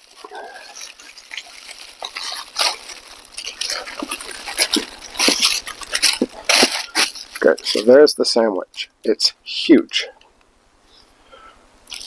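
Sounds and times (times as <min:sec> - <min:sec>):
plastic wrapper crinkling: 0:00.0 - 0:07.9.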